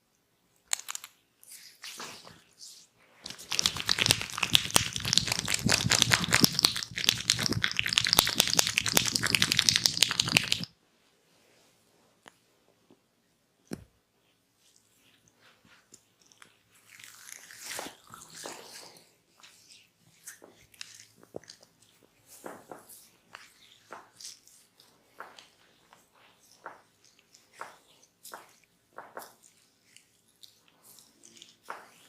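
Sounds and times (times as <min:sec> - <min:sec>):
close crackling and rustling: 0:03.2 - 0:10.7.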